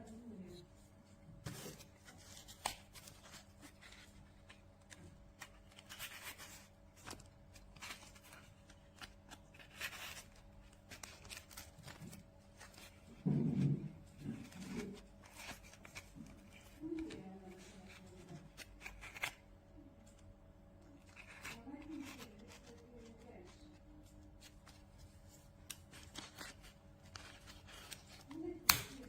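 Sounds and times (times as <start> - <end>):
handling rustling and clicks: 21.0 - 29.0.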